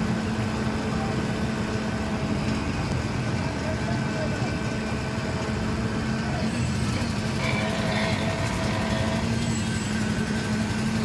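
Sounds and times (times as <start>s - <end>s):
engine running: 0.0s - 11.0s
faint voices: 3.2s - 9.3s.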